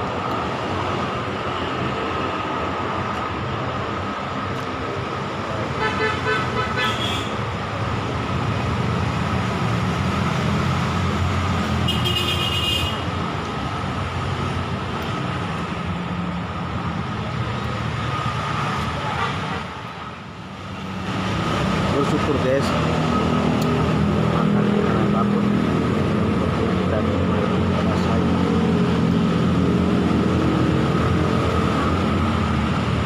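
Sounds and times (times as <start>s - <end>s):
road traffic rumble: 0.0s - 33.0s
vehicle horn toots: 5.8s - 7.4s, 11.9s - 13.0s.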